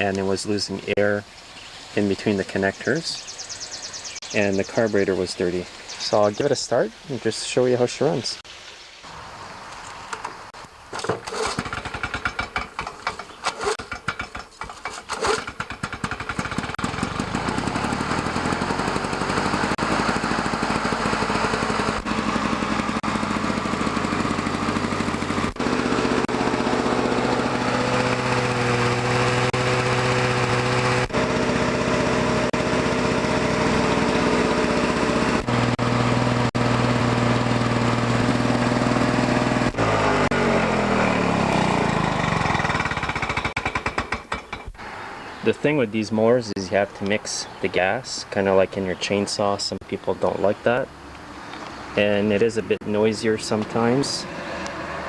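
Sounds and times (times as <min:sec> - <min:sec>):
lawn mower engine starting: 0:01.8 - 0:06.3, 0:10.9 - 0:45.3, 0:51.2 - 0:55.0.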